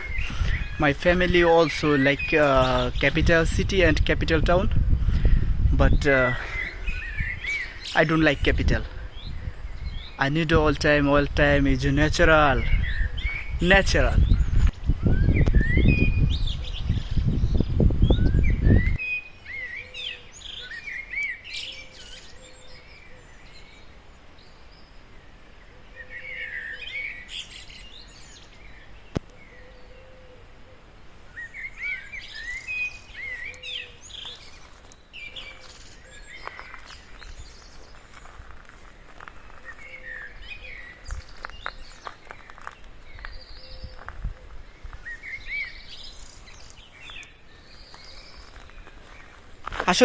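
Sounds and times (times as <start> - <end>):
songbirds chirping: 0.0 - 50.0
low rumble on microphone: 12.6 - 19.0.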